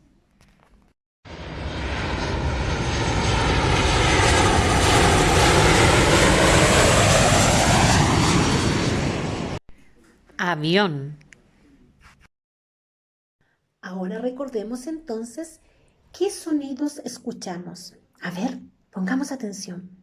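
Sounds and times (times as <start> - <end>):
airplane flying past: 1.3 - 9.6.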